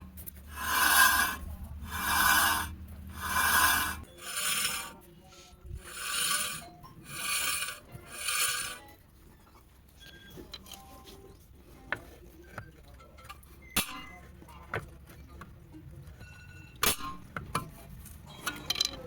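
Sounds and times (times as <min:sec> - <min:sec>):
rhythmic rasping scrapes: 0:00.4 - 0:09.0.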